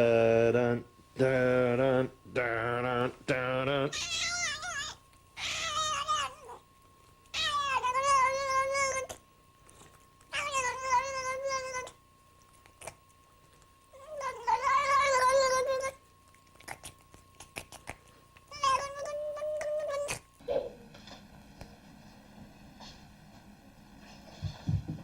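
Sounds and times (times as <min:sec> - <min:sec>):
faint steady whine: 0:00.0 - 0:25.0
cat yowling: 0:03.9 - 0:06.6, 0:07.3 - 0:09.2, 0:10.3 - 0:11.9, 0:14.0 - 0:15.9, 0:18.5 - 0:20.2.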